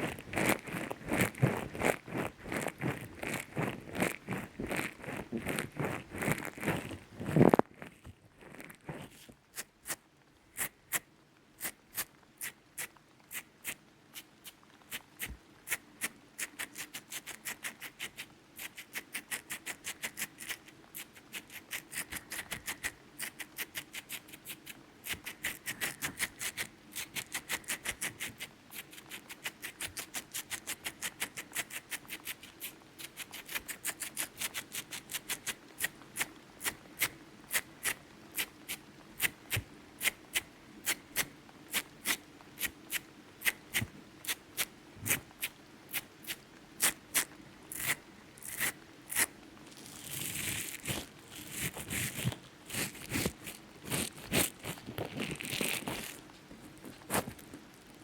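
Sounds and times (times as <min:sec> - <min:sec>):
ear-picking tool scratching: 0:00.0 - 0:09.7, 0:49.9 - 0:56.2.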